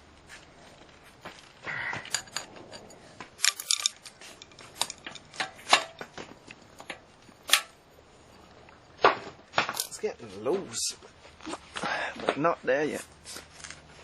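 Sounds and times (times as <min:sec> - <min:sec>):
screwdriver clicking and scraping metal: 0:02.1 - 0:07.8.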